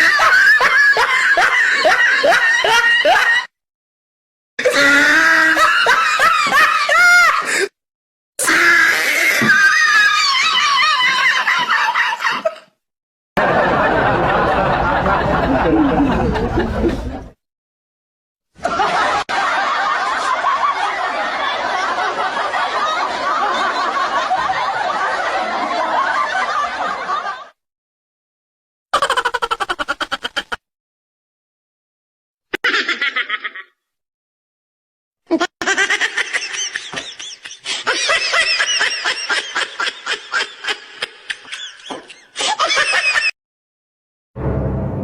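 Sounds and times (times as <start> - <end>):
laughter: 0.0 - 3.5, 4.6 - 7.7, 9.5 - 12.8, 13.4 - 17.4, 18.6 - 27.6, 29.0 - 30.6, 32.6 - 33.8, 35.3 - 43.4.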